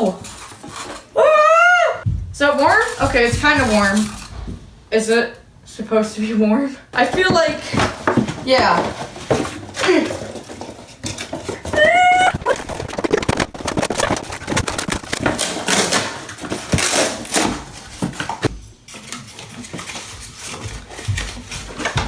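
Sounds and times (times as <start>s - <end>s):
packaging rustling: 7.5s - 22.0s.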